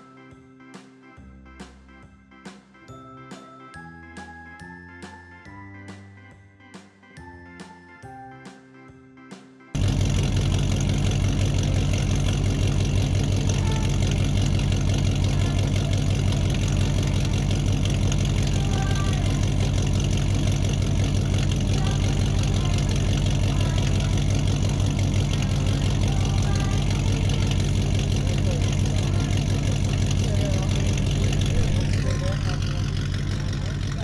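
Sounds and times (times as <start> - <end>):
engine idling: 9.8 - 34.0.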